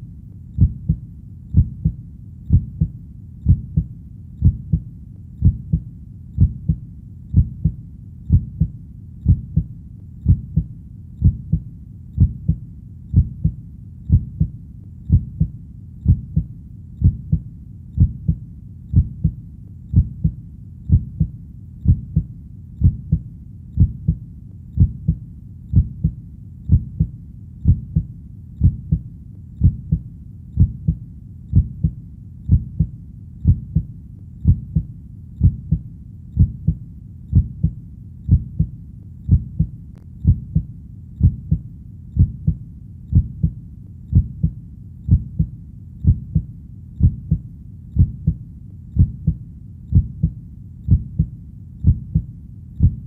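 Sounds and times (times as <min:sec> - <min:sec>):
heartbeat double thumps: 0:00.6 - 0:53.0.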